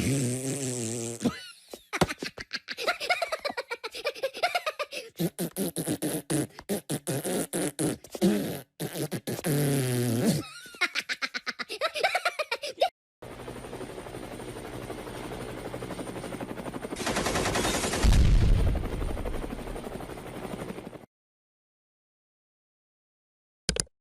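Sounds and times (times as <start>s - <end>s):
sputtering vocal pops and clicks: 5.2s - 10.4s.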